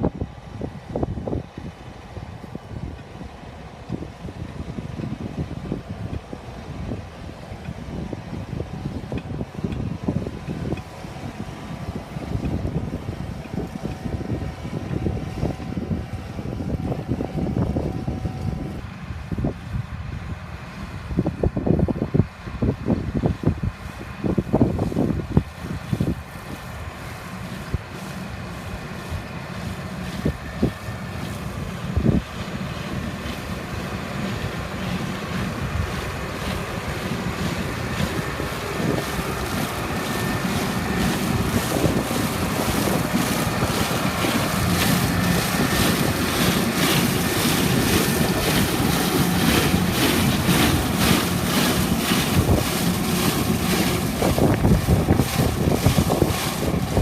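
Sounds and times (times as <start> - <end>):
wind buffeting microphone: 0.0 - 57.0
tractor engine under load: 22.1 - 57.0.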